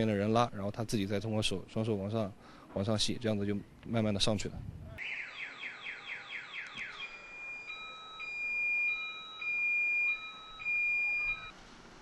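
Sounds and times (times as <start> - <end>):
electronic alarm falling chirps: 5.0 - 11.5
two-tone alarm alternation: 5.0 - 11.5.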